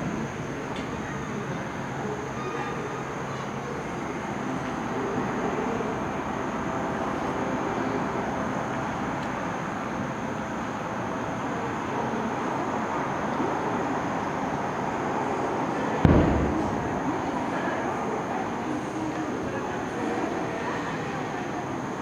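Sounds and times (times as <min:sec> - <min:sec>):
crowd hubbub: 0:00.0 - 0:22.0
firework shell bursting boom: 0:16.0 - 0:17.4.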